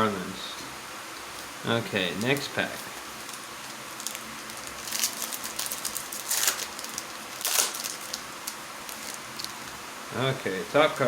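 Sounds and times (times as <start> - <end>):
wrapper crinkling and tearing: 3.2 - 9.8.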